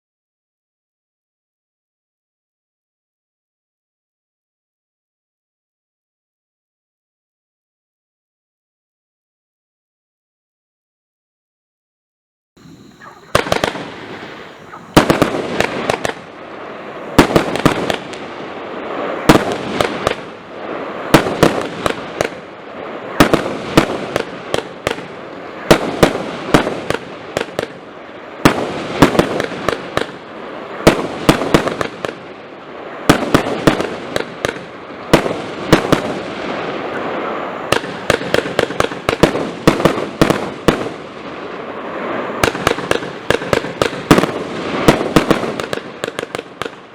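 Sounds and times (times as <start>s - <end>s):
fireworks crackling hiss: 12.6s - 46.9s
fireworks sharp reports: 12.6s - 46.9s.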